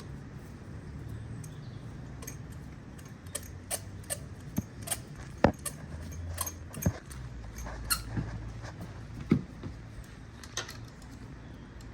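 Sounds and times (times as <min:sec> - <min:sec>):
tools clicking and tapping: 0:01.4 - 0:08.3.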